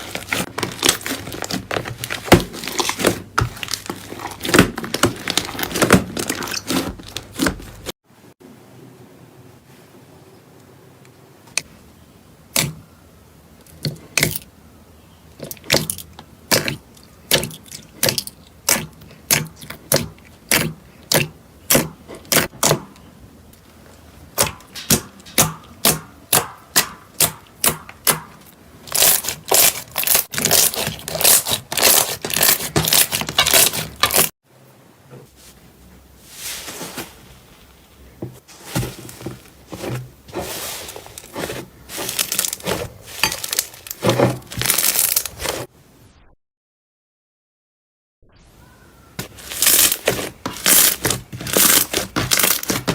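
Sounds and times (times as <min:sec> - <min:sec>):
slime popping and crackling: 0:28.9 - 0:34.3
soft slime crunching: 0:36.4 - 0:45.7.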